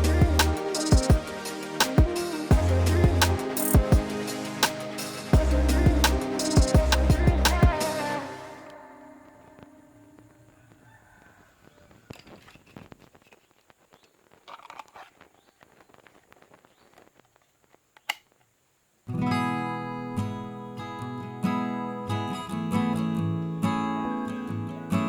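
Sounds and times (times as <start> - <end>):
strummed acoustic guitar music: 19.1 - 25.0.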